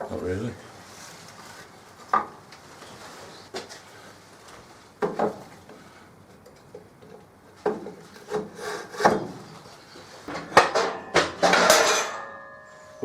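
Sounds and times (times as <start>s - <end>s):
metal tools knocking on wood: 10.3s - 12.7s.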